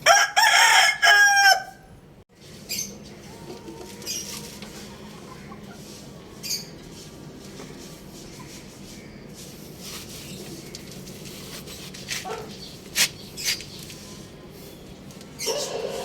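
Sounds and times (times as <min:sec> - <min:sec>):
chickens calling: 0:02.6 - 0:09.6, 0:15.2 - 0:16.0.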